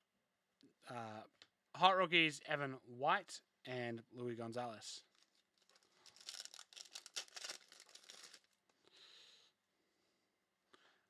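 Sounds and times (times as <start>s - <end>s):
cards and packaging rustling: 5.1s - 8.6s.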